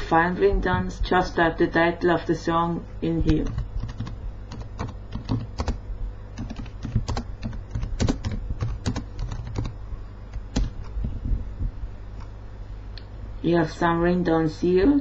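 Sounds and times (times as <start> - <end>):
typing on computer keyboard: 3.3 - 5.8, 6.4 - 9.7, 10.4 - 10.9.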